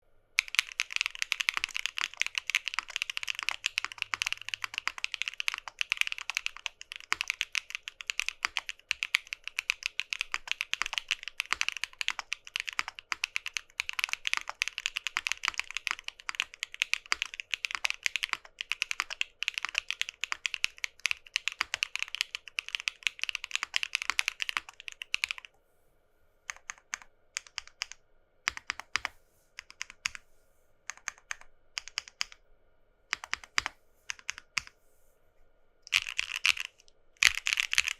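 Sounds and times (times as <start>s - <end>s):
fast typing on mechanical keyboard: 0.4s - 25.5s, 26.5s - 30.2s, 30.9s - 32.4s, 33.1s - 34.7s, 35.9s - 37.9s.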